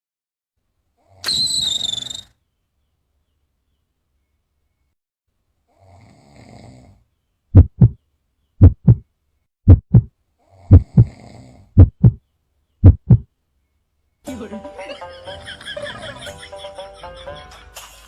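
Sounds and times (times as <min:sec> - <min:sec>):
person snoring: 0:05.7 - 0:07.0, 0:10.5 - 0:11.7
low thumps: 0:07.6 - 0:08.0, 0:08.6 - 0:09.0, 0:09.7 - 0:10.1, 0:10.7 - 0:11.1, 0:11.8 - 0:12.2, 0:12.8 - 0:13.2.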